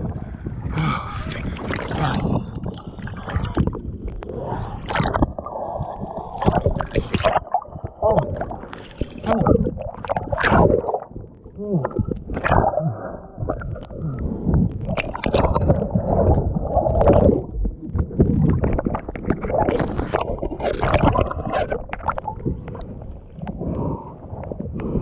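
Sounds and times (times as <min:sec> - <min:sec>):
water sloshing against kayak: 0:01.0 - 0:12.8.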